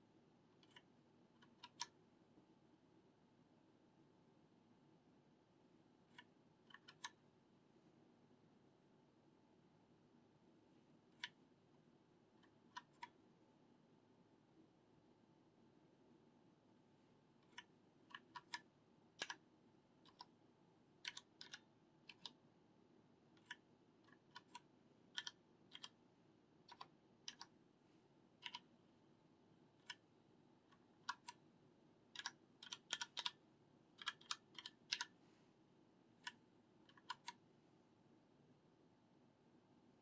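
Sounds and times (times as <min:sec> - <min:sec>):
mechanical keyboard key clicks: 0:32.2 - 0:33.4, 0:34.0 - 0:35.1.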